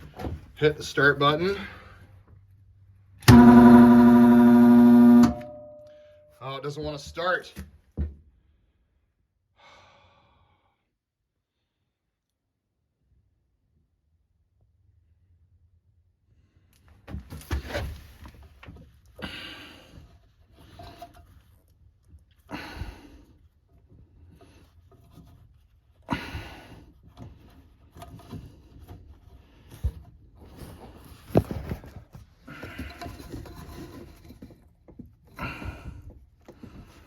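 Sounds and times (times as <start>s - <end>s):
handling knocks and rustles: 27.0s - 37.0s.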